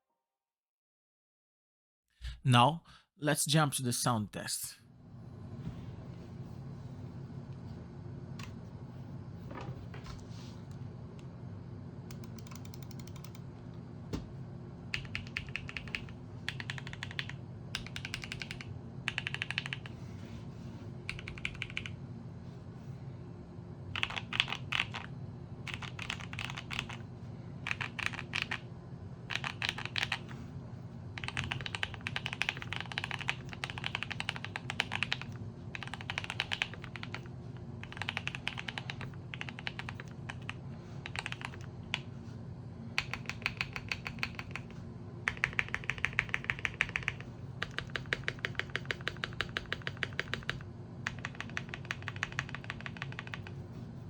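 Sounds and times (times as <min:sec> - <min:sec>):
steady low hum: 0:02.2 - 0:54.0
mechanical keyboard typing: 0:12.1 - 0:13.4, 0:14.9 - 0:20.0, 0:21.1 - 0:21.9, 0:24.0 - 0:25.1, 0:25.7 - 0:27.0, 0:27.7 - 0:28.6, 0:29.3 - 0:30.2, 0:31.2 - 0:41.7, 0:43.0 - 0:44.7, 0:45.3 - 0:53.6.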